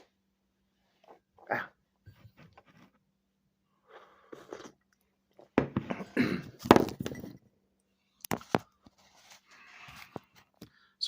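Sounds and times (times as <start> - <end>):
objects knocking and clattering: 5.4 - 7.6.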